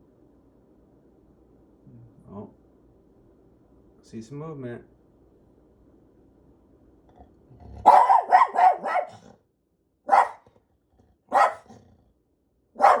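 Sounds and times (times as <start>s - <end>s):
dog barking: 7.8s - 9.3s, 10.0s - 10.6s, 11.3s - 11.8s, 12.8s - 13.0s.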